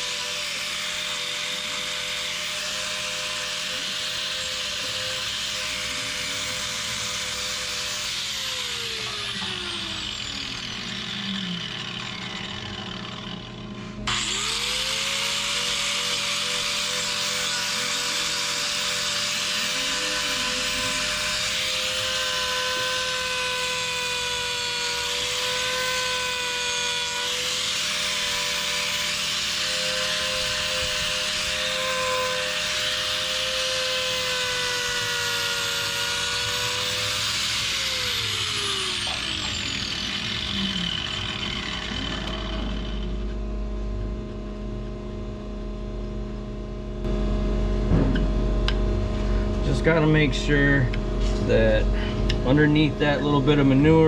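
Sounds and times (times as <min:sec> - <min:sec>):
angle grinder grinding hoof: 0:00.0 - 0:43.4, 0:47.9 - 0:54.0.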